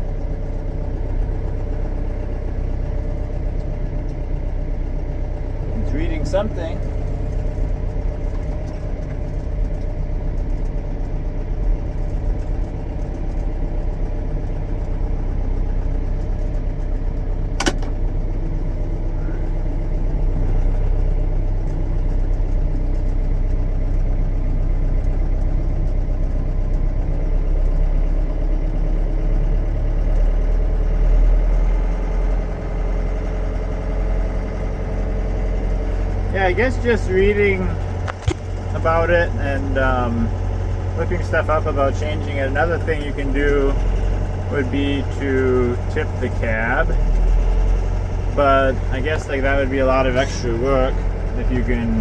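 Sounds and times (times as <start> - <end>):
tractor diesel engine idling: 0.0 - 52.0
sharp click: 17.6 - 18.0.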